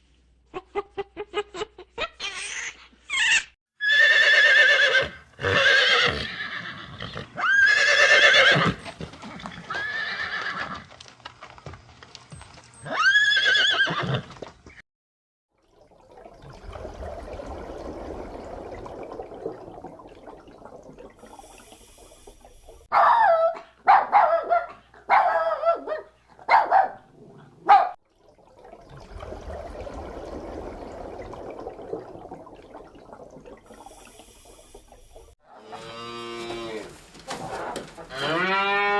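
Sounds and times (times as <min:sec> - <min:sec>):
dog yelping barks: 0:22.9 - 0:27.0, 0:27.6 - 0:28.0.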